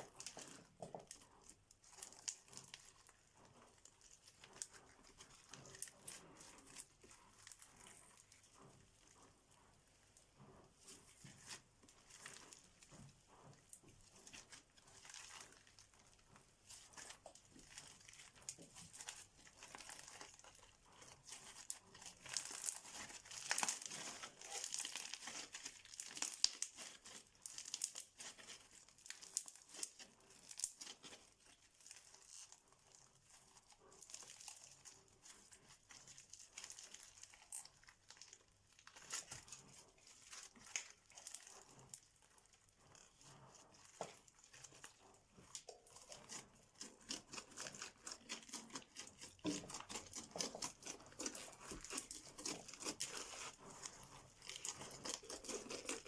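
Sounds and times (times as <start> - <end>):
slime crackling and popping: 16.7 - 41.6, 43.1 - 56.0.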